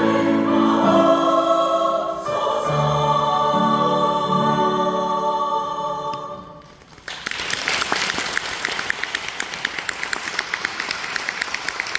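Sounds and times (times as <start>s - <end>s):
choir holding a chord: 0.0s - 6.6s
audience applauding: 6.9s - 11.9s.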